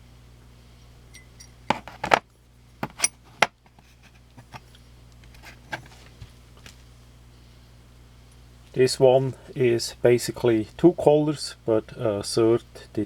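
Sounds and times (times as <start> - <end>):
metal knife scales clinking: 1.1 - 1.7.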